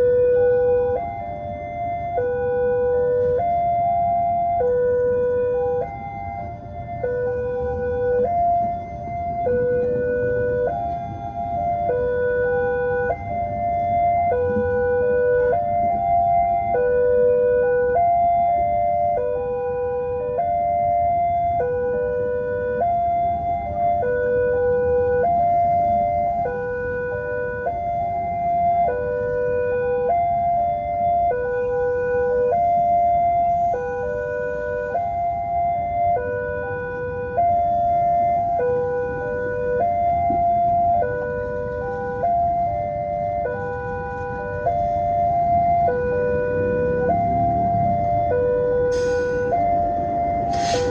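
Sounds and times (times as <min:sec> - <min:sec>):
road traffic rumble: 0:00.0 - 0:50.9
level crossing alarm two-tone: 0:47.1 - 0:50.9.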